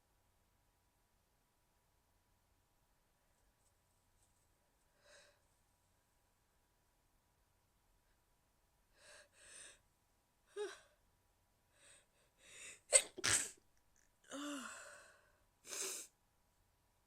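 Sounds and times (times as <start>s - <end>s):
woman gasping inhales: 11.8s - 12.9s
woman stifling a sneeze: 12.9s - 13.6s.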